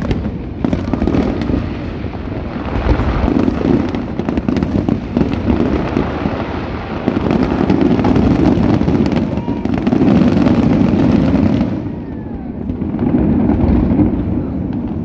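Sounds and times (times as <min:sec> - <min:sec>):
fireworks booming and crackling: 0:00.0 - 0:15.0
low rumble: 0:00.5 - 0:06.3.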